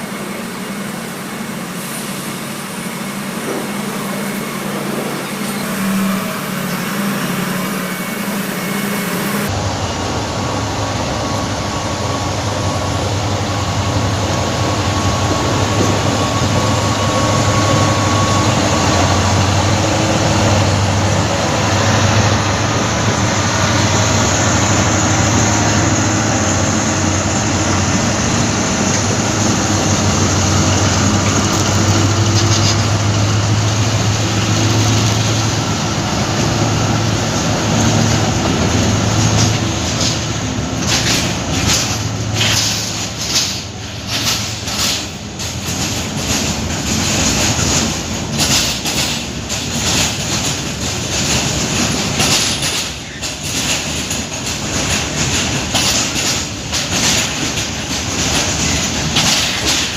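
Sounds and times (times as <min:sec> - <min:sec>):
train running: 0:00.0 - 0:59.9.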